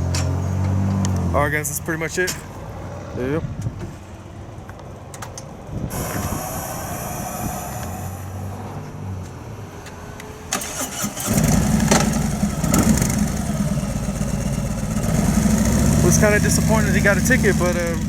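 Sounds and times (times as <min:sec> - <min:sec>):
motorcycle engine starting and idling: 0:10.4 - 0:18.0.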